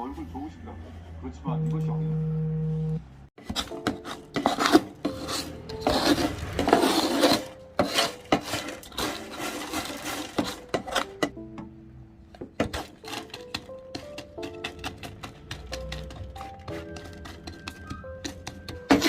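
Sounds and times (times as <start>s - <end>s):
rough scraping and rubbing: 3.4s - 11.4s, 12.5s - 19.0s.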